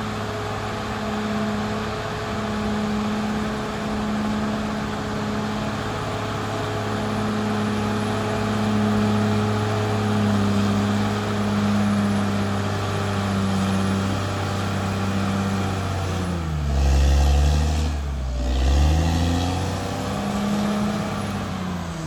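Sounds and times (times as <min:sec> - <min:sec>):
bulldozer diesel engine running: 0:00.0 - 0:22.0.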